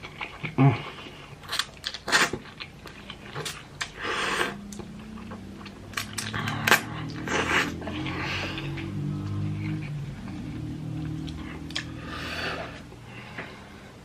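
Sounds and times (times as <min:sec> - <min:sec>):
wet chewing clicks: 0:04.6 - 0:10.0, 0:10.6 - 0:12.0.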